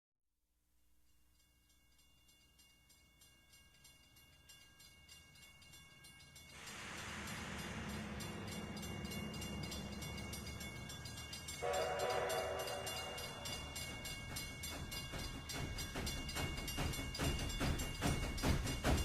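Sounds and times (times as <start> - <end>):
locomotive chime whistle: 4.6 - 19.0
steam locomotive rumble and hiss: 6.6 - 19.0.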